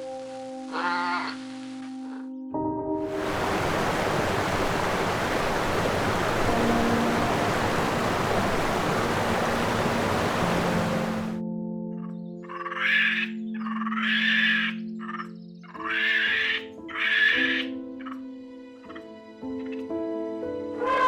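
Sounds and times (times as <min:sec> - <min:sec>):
faint background music: 0:00.0 - 0:03.2, 0:06.3 - 0:21.0
steady rushing hiss: 0:03.1 - 0:11.4.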